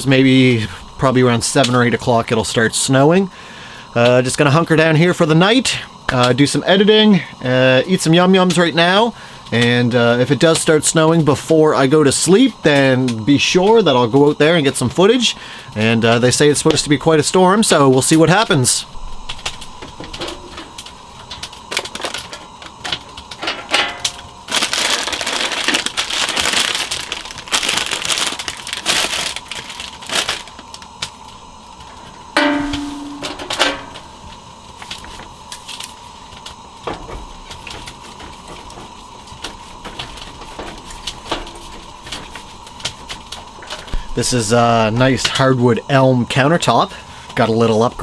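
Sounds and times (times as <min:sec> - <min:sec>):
wood fire crackling: 0:00.0 - 0:48.0
knocks and clatter of handling: 0:32.4 - 0:34.3.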